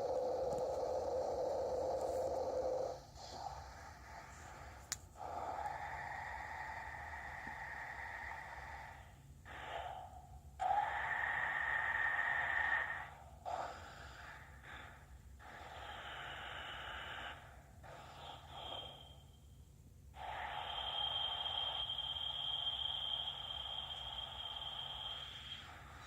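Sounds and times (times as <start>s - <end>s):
thin steady whine: 0.0s - 26.0s
phone speaker harsh hissing: 20.2s - 26.0s.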